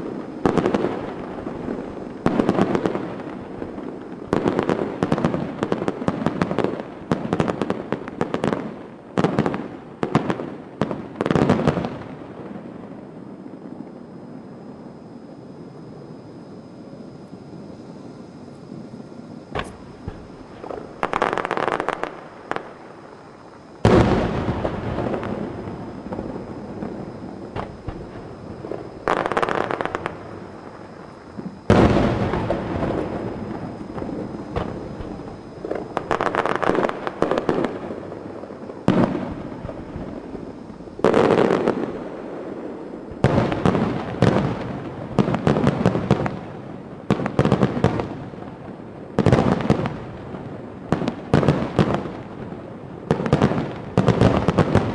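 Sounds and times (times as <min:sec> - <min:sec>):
firework shells booming: 0:19.5 - 0:22.8, 0:23.8 - 0:42.2.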